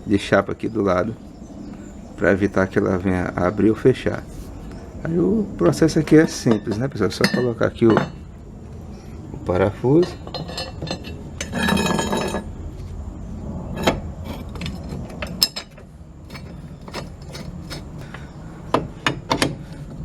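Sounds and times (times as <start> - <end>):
metal rattling scrape: 10.0 - 12.6, 13.7 - 18.2.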